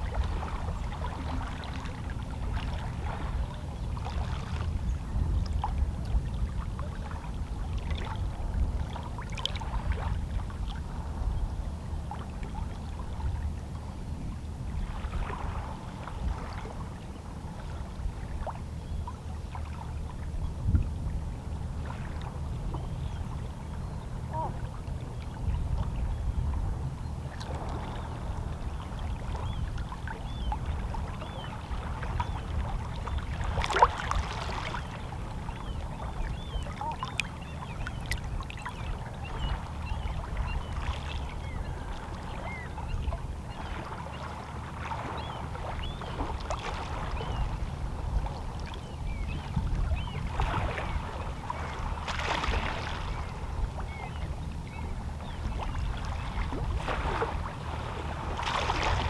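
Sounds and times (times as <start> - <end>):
low rumble of the sea: 0.0 - 59.0
waves lapping against rocks: 30.6 - 35.3, 49.4 - 54.0, 55.2 - 59.0.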